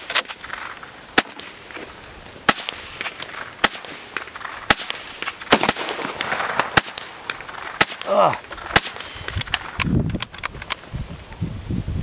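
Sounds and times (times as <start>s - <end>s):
faint gunshots: 2.4s - 9.7s
loud gunshots: 2.5s - 9.7s.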